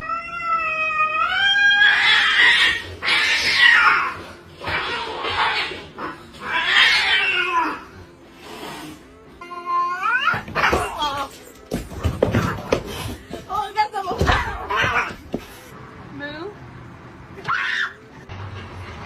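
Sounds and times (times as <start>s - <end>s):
cat yowling: 0.0s - 8.0s, 17.4s - 18.0s.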